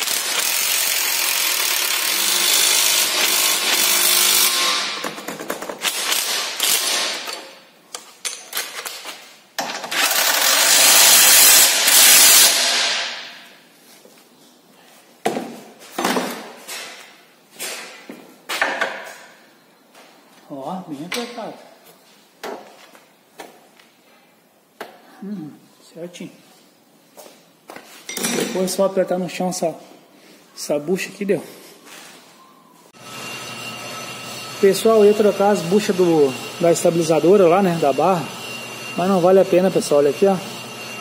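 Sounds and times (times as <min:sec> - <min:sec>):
electric impact wrench: 0:00.0 - 0:07.5, 0:09.6 - 0:13.4, 0:33.0 - 0:41.0.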